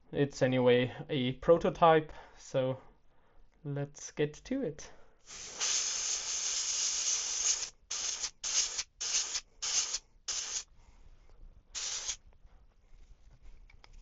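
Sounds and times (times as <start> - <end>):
airbrush spraying with hiss: 5.2 - 10.7, 11.7 - 12.2.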